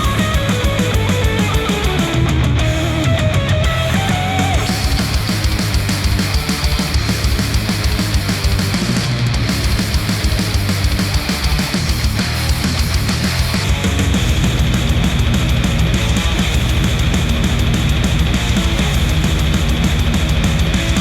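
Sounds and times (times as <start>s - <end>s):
heavy distorted rock music: 0.0s - 21.0s
rapid low drum hits: 0.0s - 21.0s.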